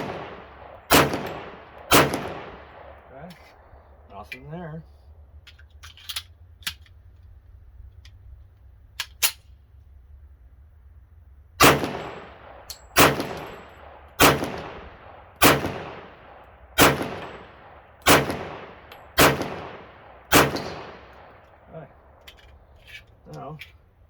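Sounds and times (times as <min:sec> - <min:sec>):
pistol shots echoing: 0:00.0 - 0:03.1, 0:11.6 - 0:22.2
pistol metallic clicks: 0:05.5 - 0:09.6, 0:11.6 - 0:14.4, 0:20.3 - 0:23.8.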